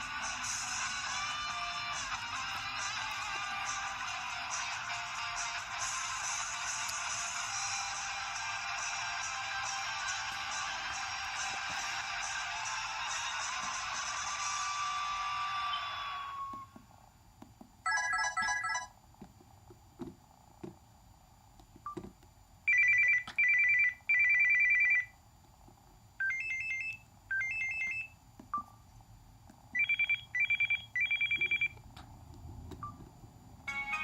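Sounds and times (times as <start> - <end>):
phone alert beeps: 29.8 - 31.8.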